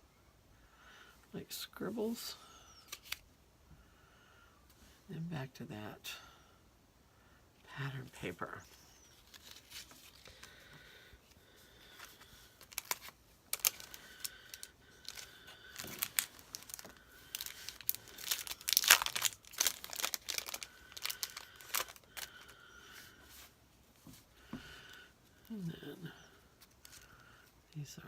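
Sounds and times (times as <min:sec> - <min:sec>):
packaging crinkling and rustling: 0:09.0 - 0:10.6, 0:11.8 - 0:22.6.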